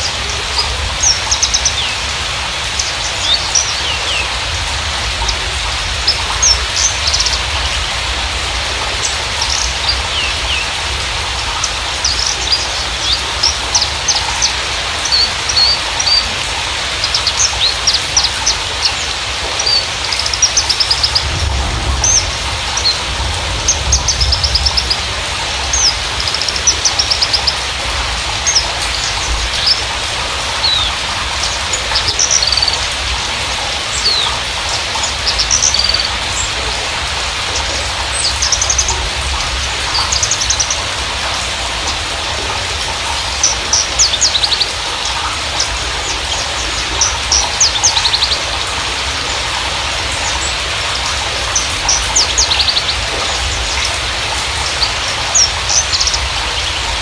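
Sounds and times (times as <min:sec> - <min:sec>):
bird singing chirps and trills: 0:00.0 - 0:57.0
steady hiss: 0:00.0 - 0:57.0
low rumble: 0:20.6 - 0:26.9.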